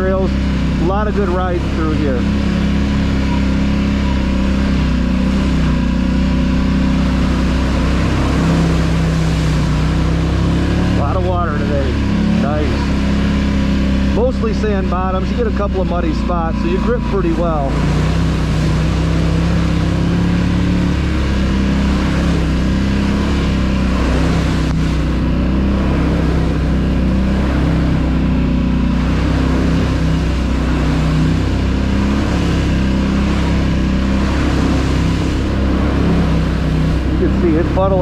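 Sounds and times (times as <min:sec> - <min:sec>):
quad bike engine running: 0:00.0 - 0:38.0.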